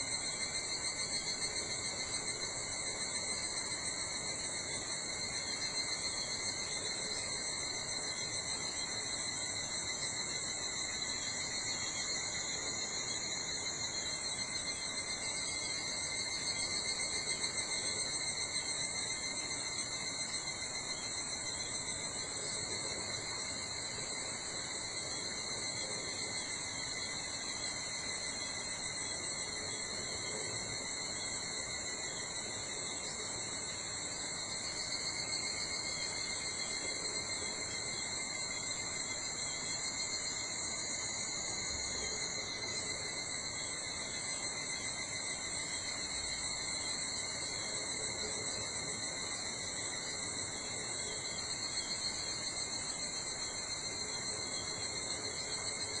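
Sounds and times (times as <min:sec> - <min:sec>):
insects trilling: 0:00.0 - 0:56.0.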